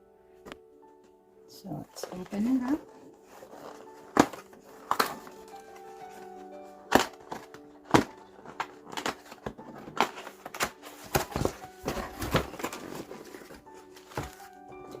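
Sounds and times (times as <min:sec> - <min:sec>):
packaging crinkling: 0:01.8 - 0:15.0
cardboard box clicks and knocks: 0:03.4 - 0:05.5, 0:06.9 - 0:15.0.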